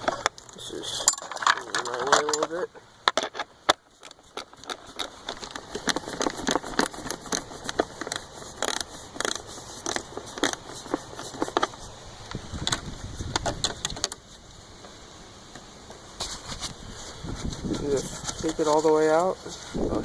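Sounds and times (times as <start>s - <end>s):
wrench clicking and knocking: 1.0s - 11.7s.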